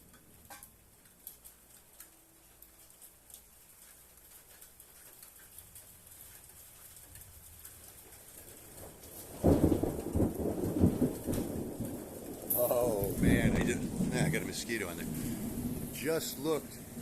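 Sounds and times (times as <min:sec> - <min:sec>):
thunder rumbling: 0:08.4 - 0:17.0.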